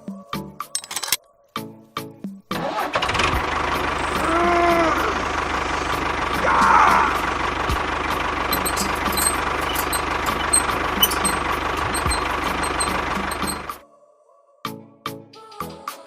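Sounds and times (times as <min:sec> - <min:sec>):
engine idling: 0:02.8 - 0:13.8.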